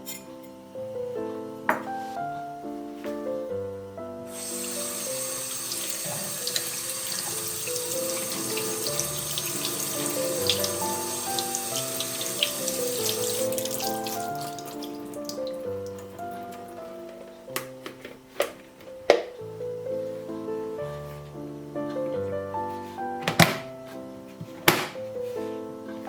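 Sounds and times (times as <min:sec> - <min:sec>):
soft background music: 0:00.0 - 0:26.0
tap water splashing into sink: 0:05.6 - 0:16.2.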